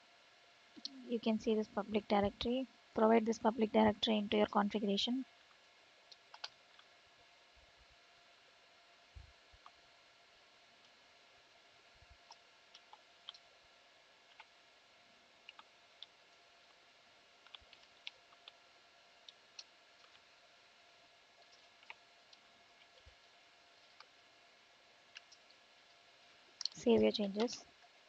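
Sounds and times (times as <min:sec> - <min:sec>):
low steady room hiss: 0:00.0 - 0:28.0
computer keyboard keystrokes: 0:06.3 - 0:06.5, 0:17.4 - 0:18.6.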